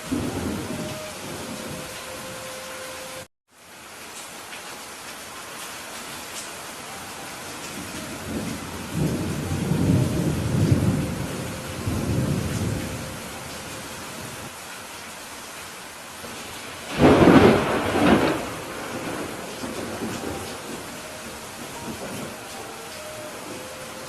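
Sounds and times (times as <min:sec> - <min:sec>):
thunder rumbling: 0:00.0 - 0:03.2, 0:07.6 - 0:14.5, 0:16.2 - 0:24.0
heavy rain: 0:00.0 - 0:24.0
sharp thunderclap: 0:16.9 - 0:20.8.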